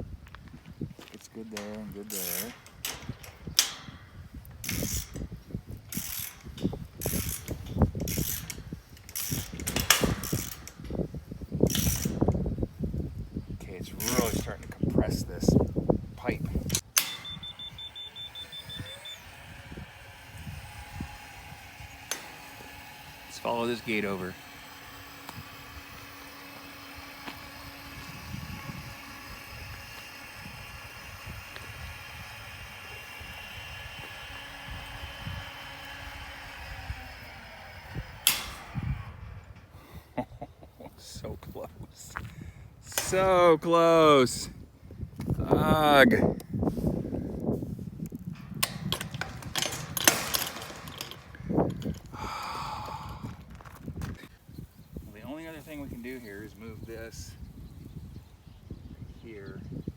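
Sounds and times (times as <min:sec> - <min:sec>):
wind noise on microphone: 0:00.0 - 0:59.9
gate opener motor humming: 0:01.3 - 0:40.2, 0:42.2 - 0:44.4, 0:45.2 - 0:54.4
ratchet wrench clicking: 0:02.1 - 0:04.0, 0:04.6 - 0:05.3, 0:05.9 - 0:10.8, 0:11.6 - 0:12.4.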